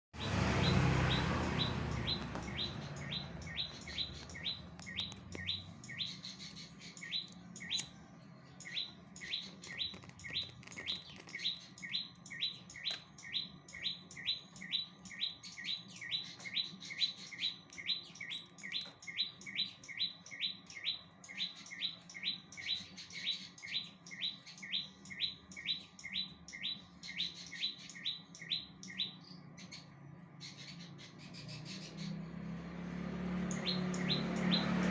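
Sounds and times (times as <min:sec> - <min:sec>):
bird calling sharp notes: 0:00.2 - 0:08.0.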